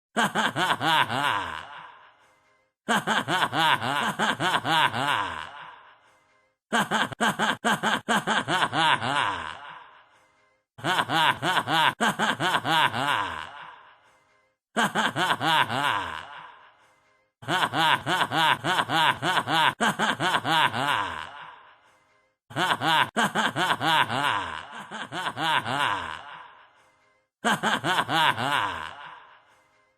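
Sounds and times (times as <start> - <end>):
man belly laughing: 0.2 - 1.8, 2.9 - 5.6, 6.7 - 9.7, 10.8 - 13.6, 14.8 - 16.4, 17.4 - 21.4, 22.5 - 26.3, 27.4 - 29.2.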